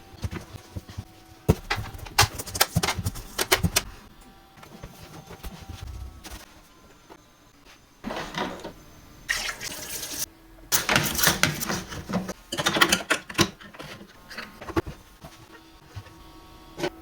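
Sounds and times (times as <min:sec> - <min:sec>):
running water splashing: 0:09.3 - 0:10.3.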